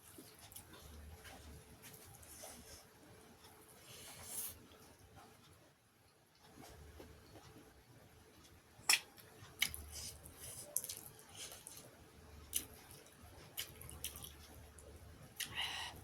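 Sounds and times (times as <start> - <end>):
wet chewing and lip smacks: 8.9 - 11.9, 12.5 - 14.8.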